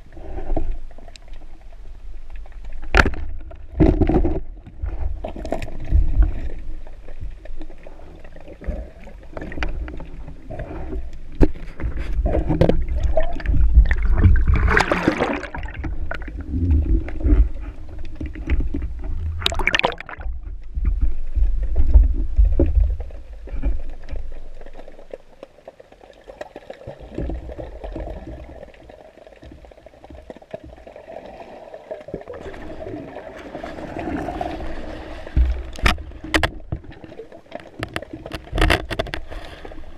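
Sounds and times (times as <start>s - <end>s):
low underwater rumble: 0.0s - 25.4s
water gurgling: 0.0s - 39.9s.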